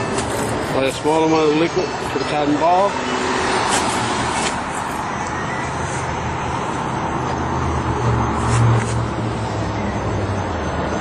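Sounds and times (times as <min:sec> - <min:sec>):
constant background noise: 0:00.0 - 0:11.0.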